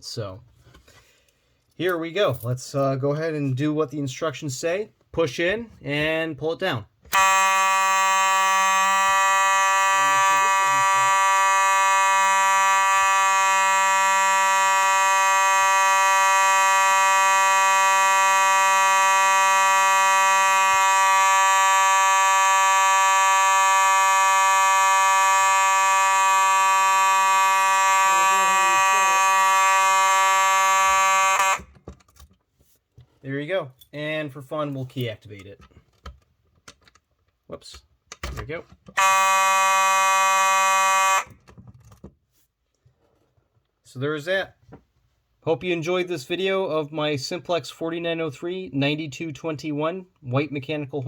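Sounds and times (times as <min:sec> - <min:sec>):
fire alarm horn buzzing: 0:07.1 - 0:31.7, 0:39.0 - 0:41.5.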